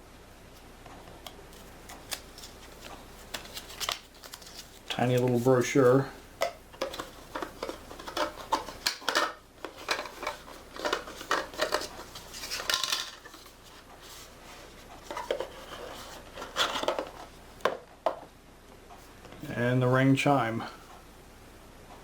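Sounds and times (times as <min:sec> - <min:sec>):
packaging rustling: 0:01.5 - 0:06.0, 0:06.7 - 0:17.4.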